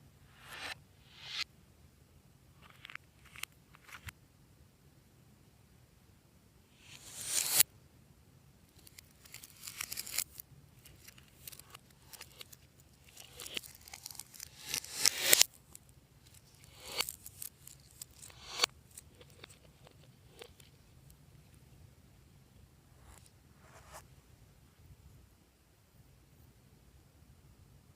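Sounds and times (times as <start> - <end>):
slime crackling and tearing: 8.8 - 15.4.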